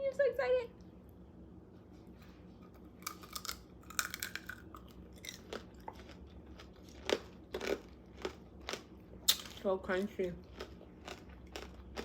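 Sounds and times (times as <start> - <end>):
crunching candy shell: 3.0 - 9.6.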